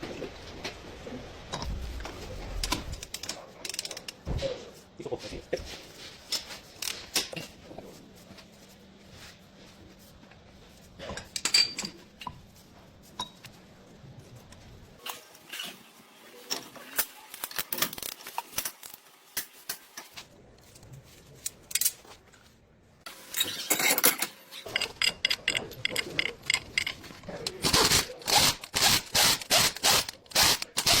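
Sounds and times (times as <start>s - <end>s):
metal tools clinking on brake parts: 23.4s - 27.6s.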